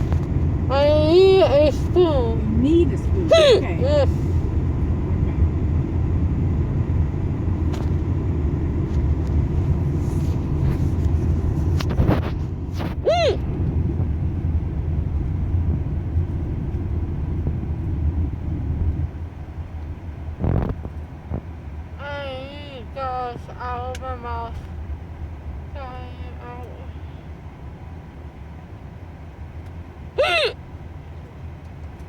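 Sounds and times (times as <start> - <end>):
road rumble inside moving car: 0.0 - 32.0
high-pitched vocal sound: 0.7 - 4.2, 13.0 - 13.4.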